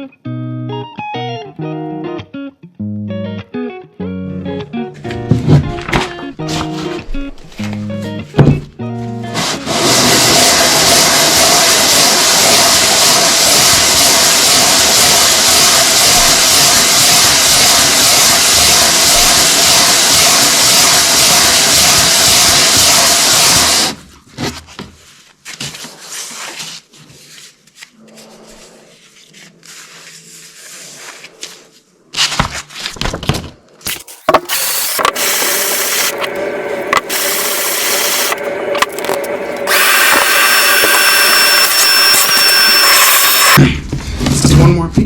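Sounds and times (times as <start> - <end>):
power tool stripping rust: 9.7 - 24.0, 34.4 - 36.3, 37.0 - 43.6.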